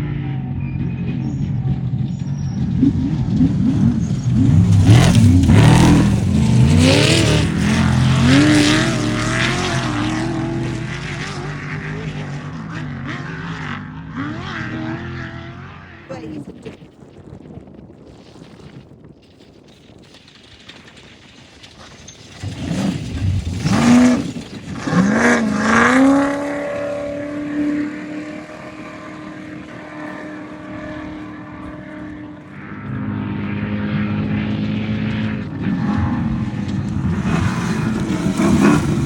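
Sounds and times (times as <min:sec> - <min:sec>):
race vehicle engine revving: 0:00.0 - 0:16.6, 0:22.4 - 0:39.0
second engine running steadily: 0:00.0 - 0:16.7, 0:23.1 - 0:39.0.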